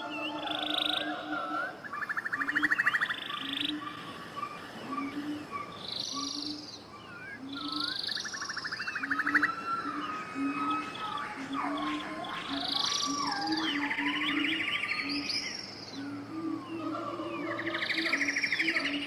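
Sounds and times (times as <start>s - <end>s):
bird trills: 0.0s - 19.0s
birds chirping: 0.0s - 19.0s.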